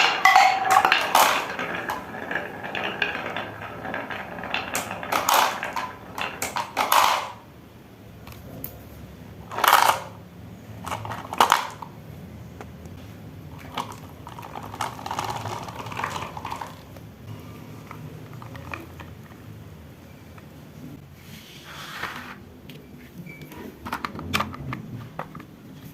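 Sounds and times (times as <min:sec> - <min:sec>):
marbles clattering down wooden ramps: 0:00.0 - 0:07.5, 0:09.4 - 0:10.2, 0:10.8 - 0:11.9, 0:13.5 - 0:19.7.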